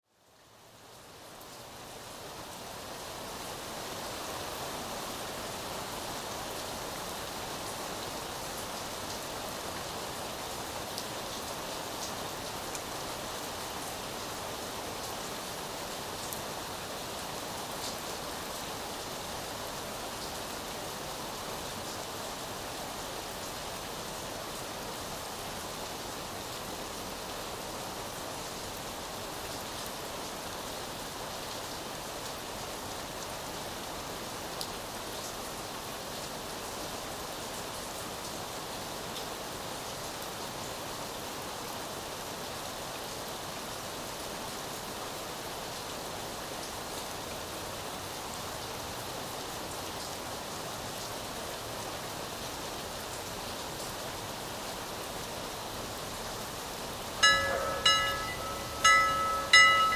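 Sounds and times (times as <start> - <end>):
steady rain falling: 0.0 - 59.9
rain drop ticks: 57.2 - 59.9.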